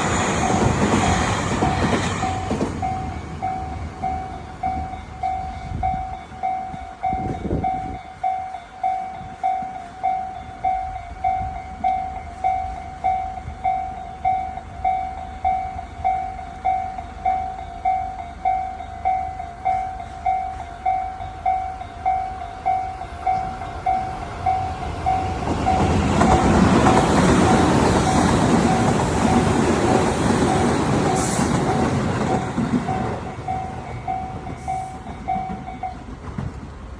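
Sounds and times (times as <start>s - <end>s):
train passing rumble: 0.0s - 36.9s
level crossing bell ringing: 2.8s - 26.7s.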